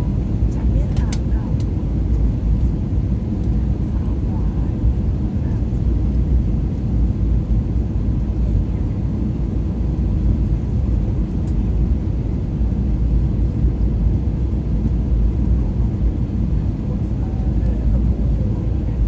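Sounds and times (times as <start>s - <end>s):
airliner engines and airflow rumble: 0.0s - 19.0s.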